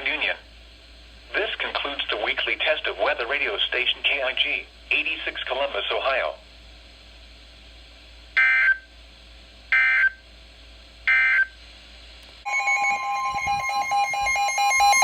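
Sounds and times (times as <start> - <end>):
radio hiss: 0.0 - 0.6, 1.2 - 6.5
alert tone with pulsing beeps: 12.5 - 15.0.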